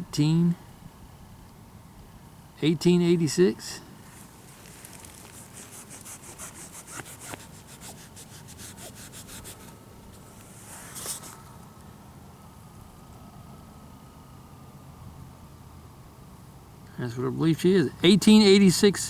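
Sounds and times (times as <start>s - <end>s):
brief scuff: 4.1s - 11.5s
fingers rubbing a coin: 4.2s - 9.7s.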